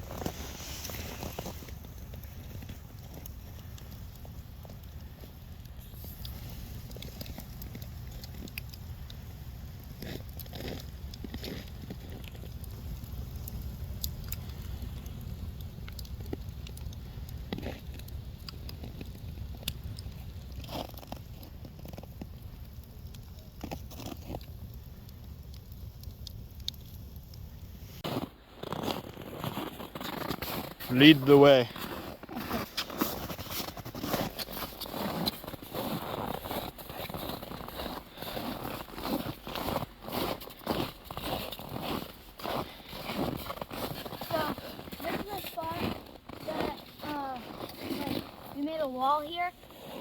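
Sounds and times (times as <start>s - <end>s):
footsteps crunching through snow: 0.0s - 3.3s, 28.0s - 50.0s
fire popping: 0.0s - 50.0s
low fire rumble: 0.0s - 50.0s
wood fire crackling: 0.0s - 50.0s.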